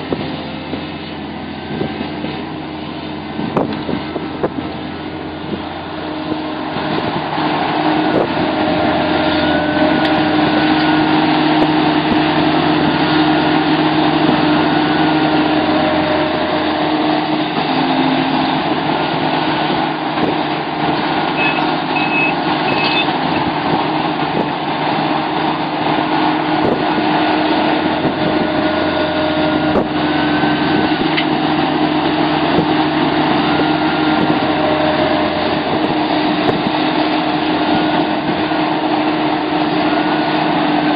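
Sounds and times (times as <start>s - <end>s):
excavator diesel engine running: 0.0s - 40.9s
short high beeps: 21.4s - 23.1s.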